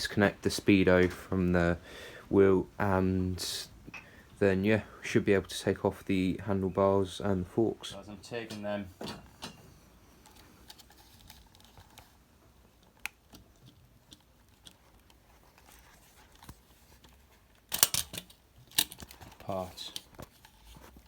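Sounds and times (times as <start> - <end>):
parts clattering: 13.0 - 21.0.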